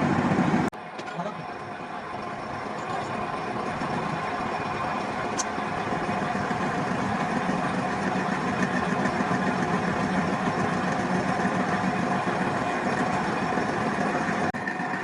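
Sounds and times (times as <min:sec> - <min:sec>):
machinery running: 0:00.0 - 0:15.0.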